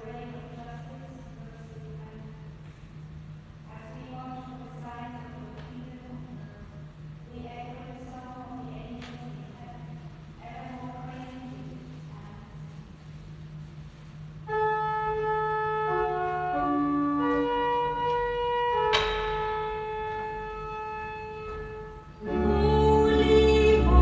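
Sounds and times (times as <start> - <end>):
church organ playing: 14.5 - 24.0
sung music: 22.0 - 24.0.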